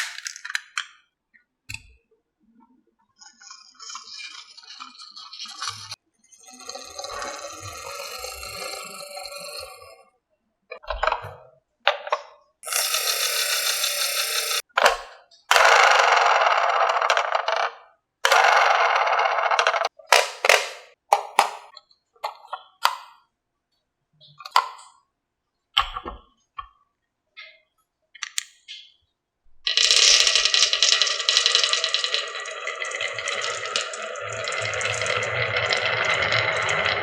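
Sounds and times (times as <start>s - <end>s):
marbles rolling down wooden run: 3.4s - 10.0s, 12.6s - 14.6s, 15.5s - 20.8s, 29.7s - 37.0s
marbles clacking against wood: 12.6s - 21.7s, 29.7s - 37.0s.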